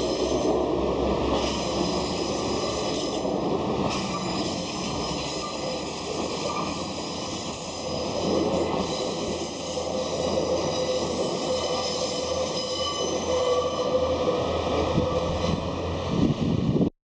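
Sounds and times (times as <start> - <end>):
train rumbling past: 0.0 - 16.9
wheel squeal: 3.9 - 14.2.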